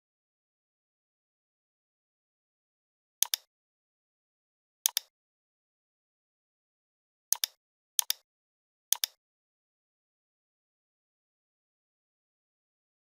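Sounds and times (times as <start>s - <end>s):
computer mouse double clicks: 3.2s - 3.5s, 4.9s - 5.1s, 7.3s - 8.2s, 8.9s - 9.2s.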